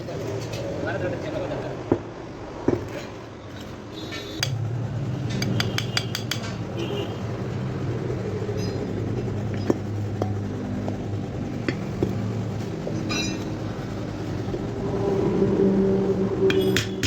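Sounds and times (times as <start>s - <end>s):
metal fan parts clinking: 2.9s - 6.8s, 8.4s - 14.7s, 16.4s - 17.0s
steady low hum: 6.6s - 17.0s.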